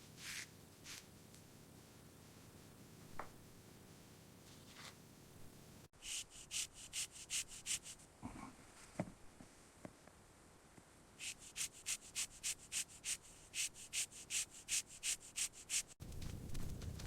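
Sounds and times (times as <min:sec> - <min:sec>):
rhythmic hissy rubbing swishes: 0:06.0 - 0:08.0, 0:11.2 - 0:16.0
steady low background noise: 0:08.0 - 0:11.2.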